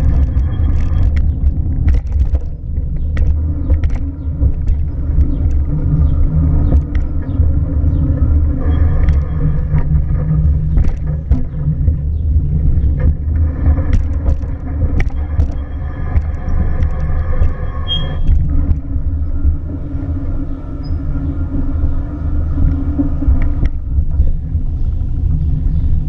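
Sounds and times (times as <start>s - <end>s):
short clicks and knocks: 0.0s - 5.8s, 12.8s - 19.0s
car engine rumble: 0.0s - 26.0s.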